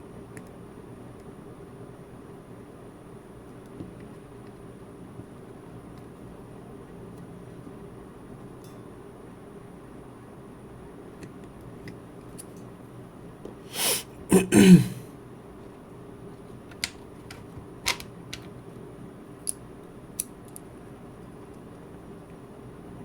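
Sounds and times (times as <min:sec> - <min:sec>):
person clearing throat and coughing: 0:13.7 - 0:15.1
light clicks of small tools: 0:20.2 - 0:20.7.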